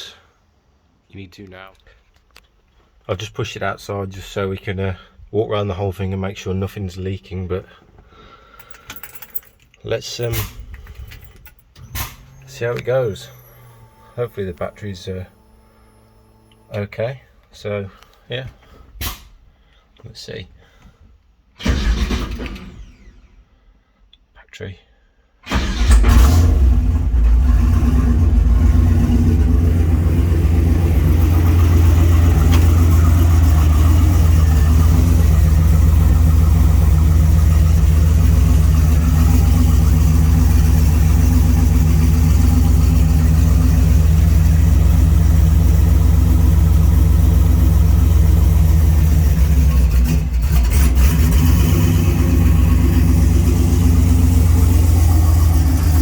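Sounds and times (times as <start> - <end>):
turbocharged truck engine running: 25.6 - 56.0.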